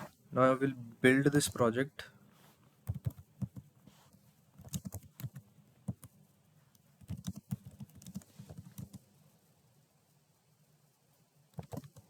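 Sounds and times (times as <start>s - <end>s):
computer keyboard typing: 2.8s - 3.7s, 4.6s - 6.1s, 7.0s - 9.0s, 11.6s - 12.0s.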